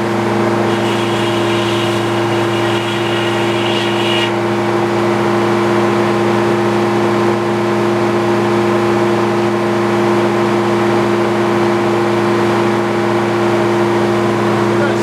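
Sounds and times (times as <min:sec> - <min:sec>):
sawmill engine running: 0:00.0 - 0:04.6.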